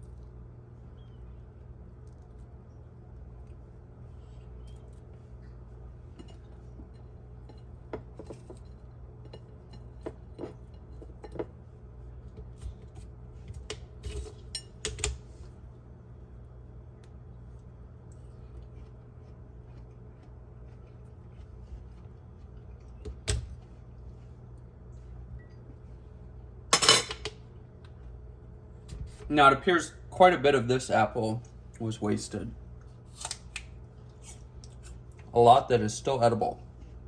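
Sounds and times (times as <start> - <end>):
steady low hum: 0.0 - 37.0
utensils and dishes clinking: 26.8 - 27.4.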